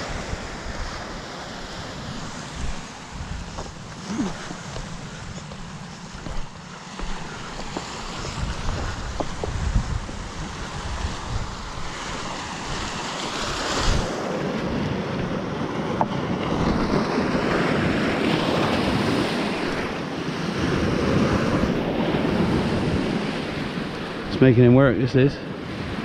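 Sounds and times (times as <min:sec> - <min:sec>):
sea waves washing onto beach: 0:00.0 - 0:26.0
wind gusting on microphone: 0:00.0 - 0:26.0.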